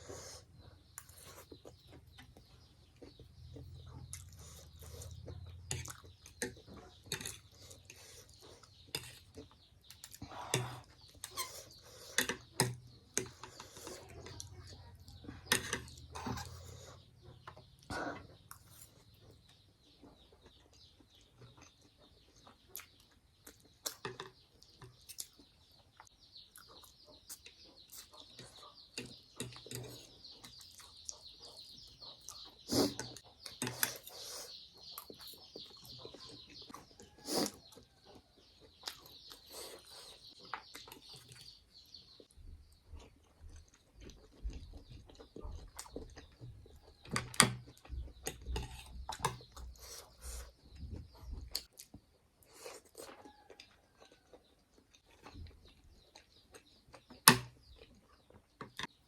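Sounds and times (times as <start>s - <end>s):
chewing and slurping: 0.0s - 59.0s.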